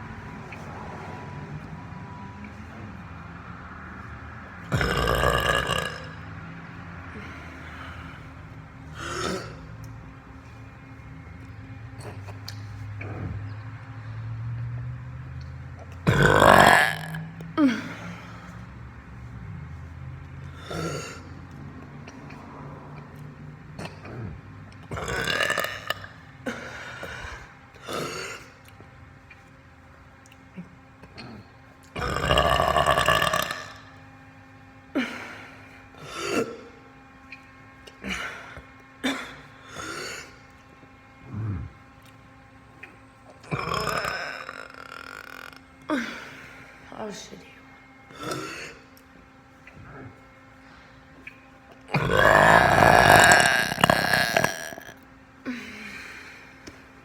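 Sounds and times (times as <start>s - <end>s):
person burping: 4.7s - 6.3s, 9.0s - 9.7s, 16.1s - 18.1s, 20.6s - 21.2s, 23.8s - 26.8s, 27.8s - 28.5s, 32.0s - 33.9s, 43.4s - 46.0s, 48.2s - 48.8s, 51.9s - 55.0s.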